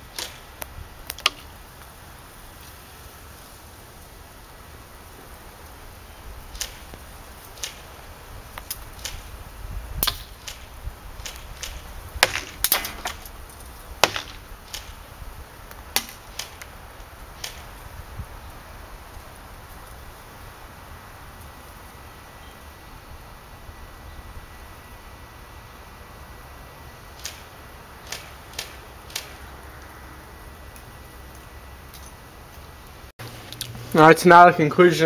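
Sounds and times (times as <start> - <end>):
airsoft gun firing clicks: 10.0 - 10.6, 27.2 - 29.4.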